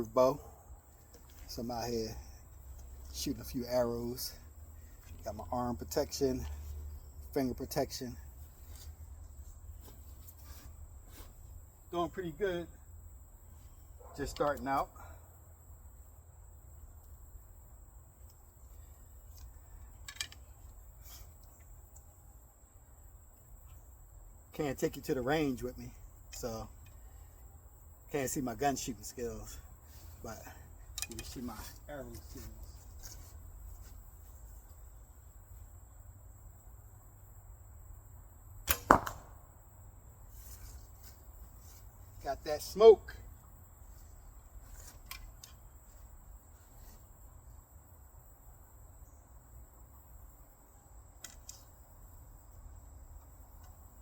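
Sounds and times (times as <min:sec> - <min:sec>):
bow string snapping: 0:38.7 - 0:39.4.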